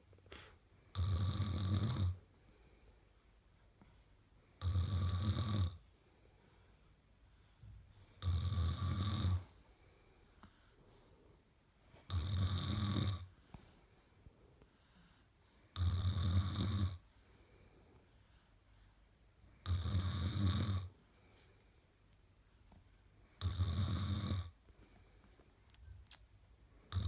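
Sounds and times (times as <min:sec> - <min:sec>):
woman snoring: 0:01.0 - 0:02.2, 0:04.6 - 0:05.8, 0:08.2 - 0:09.5, 0:12.1 - 0:13.3, 0:15.8 - 0:17.0, 0:19.6 - 0:20.9, 0:23.4 - 0:24.6.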